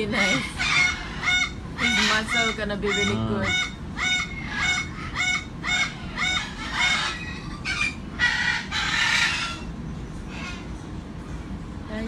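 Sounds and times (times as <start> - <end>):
cockatoo calling: 0.0 - 10.7
cockatoo screeching: 0.1 - 9.7.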